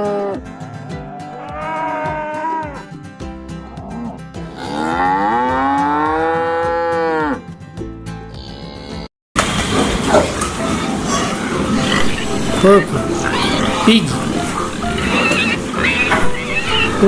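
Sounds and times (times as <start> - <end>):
cow mooing: 0.0 - 2.9, 3.6 - 7.4, 8.3 - 9.1, 11.1 - 17.0.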